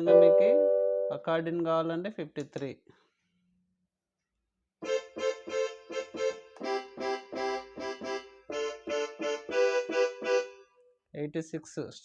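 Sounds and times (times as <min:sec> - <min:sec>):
keyboard accordion melody: 0:04.8 - 0:10.8.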